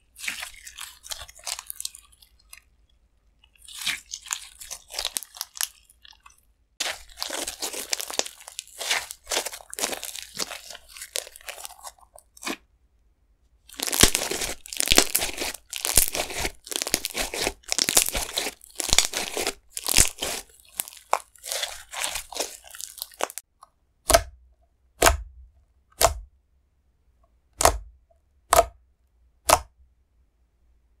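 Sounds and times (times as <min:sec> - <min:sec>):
slime crackling and popping: 0:00.1 - 0:02.7, 0:03.5 - 0:12.6, 0:13.7 - 0:23.4
sharp slime pops: 0:24.0 - 0:24.4, 0:25.0 - 0:25.3, 0:26.0 - 0:26.3, 0:27.6 - 0:27.9, 0:28.5 - 0:28.8, 0:29.5 - 0:29.7.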